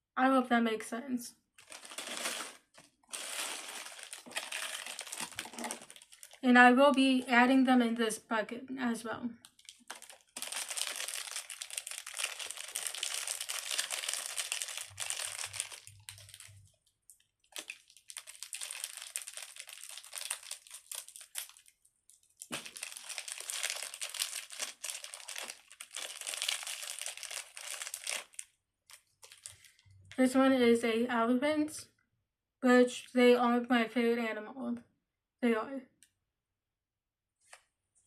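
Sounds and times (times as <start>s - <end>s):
packets crinkling: 1.6s - 6.4s, 9.4s - 29.8s.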